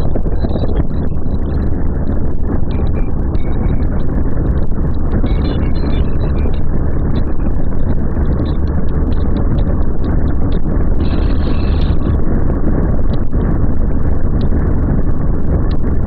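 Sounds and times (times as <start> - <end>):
wind rushing over microphone: 0.0 - 16.0
motorcycle engine: 7.9 - 12.2.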